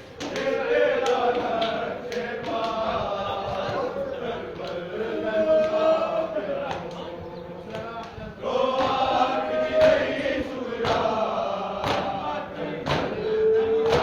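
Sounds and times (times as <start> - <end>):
men chanting a lament: 0.0 - 14.0.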